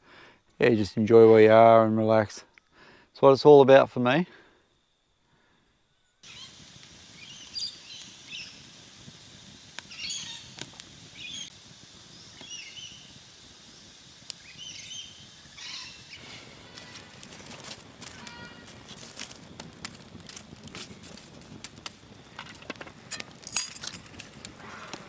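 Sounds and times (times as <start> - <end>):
faint outdoor hiss: 0.0 - 25.0
birds chirping: 6.0 - 8.8, 9.8 - 16.5
clicks and rustles: 16.7 - 25.0.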